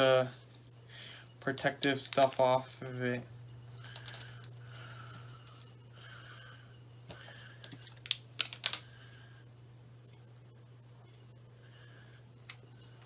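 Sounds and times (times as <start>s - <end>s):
steady low hum: 0.0s - 13.0s
plastic film crinkling: 7.6s - 8.9s
sharp clicks and snaps: 7.6s - 8.9s.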